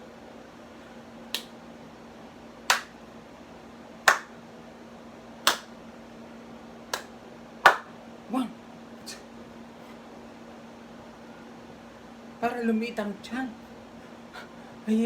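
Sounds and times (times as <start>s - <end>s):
steady low hum: 0.0s - 15.0s
sharp snapping clicks: 1.3s - 1.6s, 2.7s - 3.0s, 4.1s - 4.3s, 5.4s - 5.7s, 6.9s - 7.1s.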